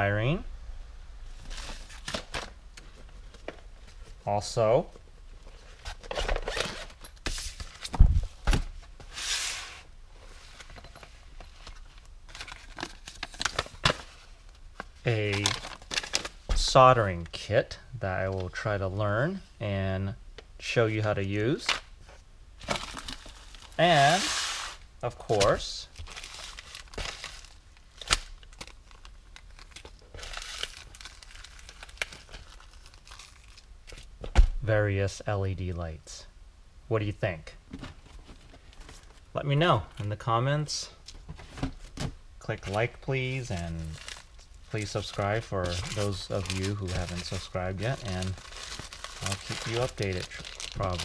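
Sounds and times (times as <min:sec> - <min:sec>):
packaging rustling: 0:10.4 - 0:16.4, 0:22.6 - 0:34.1, 0:41.4 - 0:51.0.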